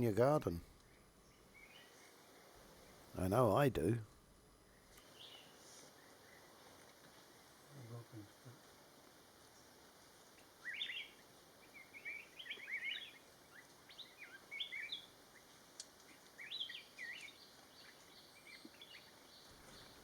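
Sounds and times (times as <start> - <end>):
faint background hiss: 0.0 - 20.0
bird chirpy calls: 10.6 - 15.1, 16.4 - 20.0.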